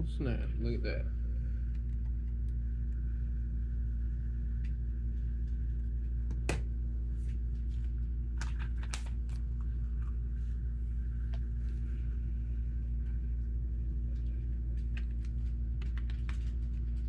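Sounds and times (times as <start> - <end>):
low room hum: 0.0 - 17.0.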